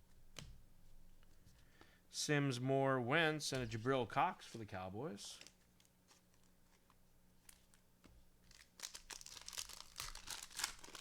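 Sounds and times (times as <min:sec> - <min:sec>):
foil wrapper crinkling: 0:08.4 - 0:11.0.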